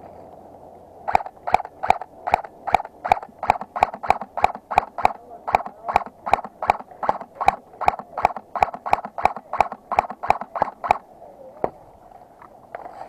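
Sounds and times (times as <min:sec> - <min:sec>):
sharp knocks: 0:01.1 - 0:11.0.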